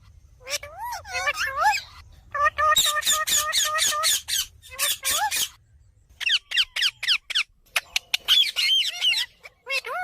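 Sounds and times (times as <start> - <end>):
baby parrots squeaking: 0.4 - 5.6, 6.2 - 10.0
sharp parrot chirps: 2.6 - 10.0.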